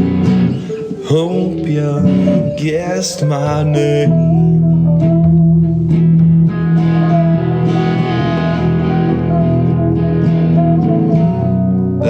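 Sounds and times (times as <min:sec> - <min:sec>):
guitar: 0:00.0 - 0:12.0
steady bass line: 0:00.0 - 0:12.0
person singing: 0:00.5 - 0:04.9.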